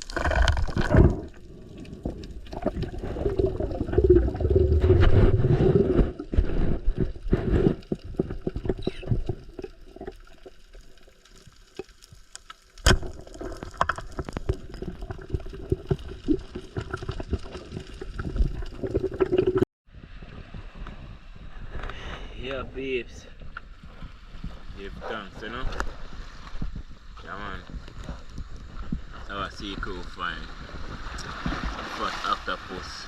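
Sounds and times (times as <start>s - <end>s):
water sloshing and splashing: 0.0s - 19.6s, 30.2s - 33.0s.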